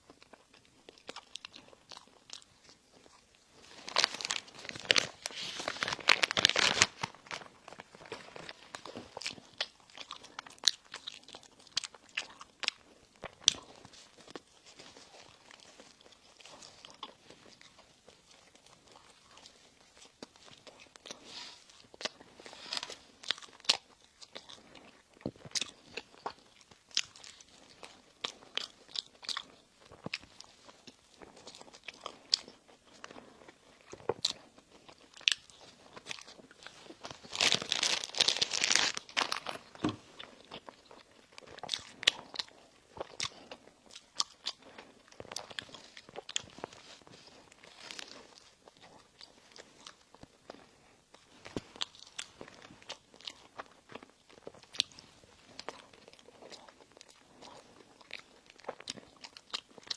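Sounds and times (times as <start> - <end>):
crunching and chewing bread: 0.0 - 59.9.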